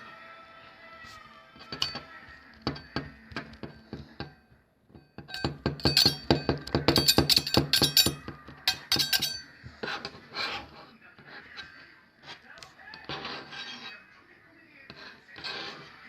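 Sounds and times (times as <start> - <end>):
sharp clinks and knocks: 1.6 - 10.2.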